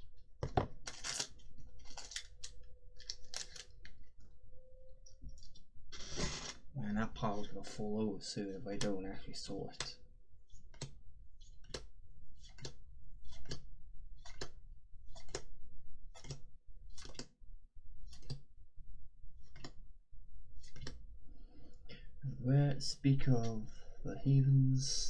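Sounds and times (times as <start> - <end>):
cards flipped with crisp snaps: 0.9 - 3.7.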